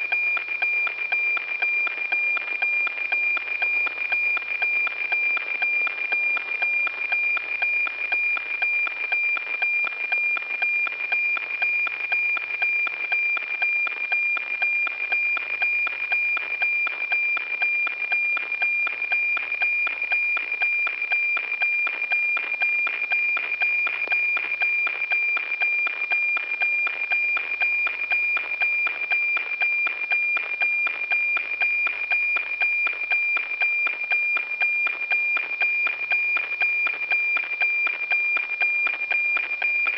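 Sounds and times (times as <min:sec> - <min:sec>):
radio signal tone with ticks: 0:00.0 - 0:39.9.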